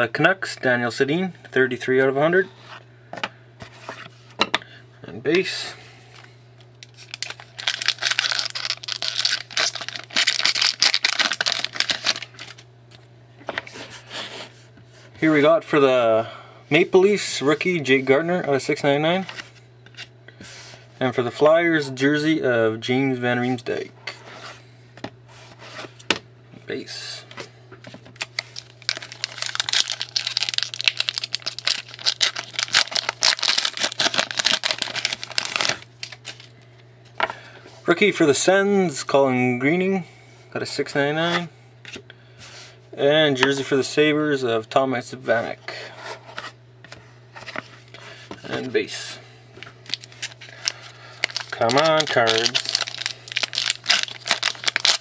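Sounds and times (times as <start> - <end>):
wrapper tearing and crinkling: 6.8 - 12.6, 28.2 - 36.5, 49.8 - 55.0.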